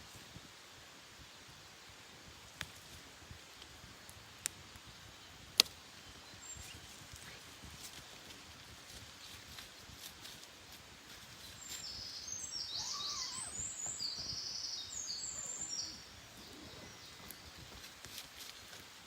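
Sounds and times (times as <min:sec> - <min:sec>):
quiet outdoor background noise: 0:00.0 - 0:19.0
songbird warbling: 0:11.6 - 0:17.7.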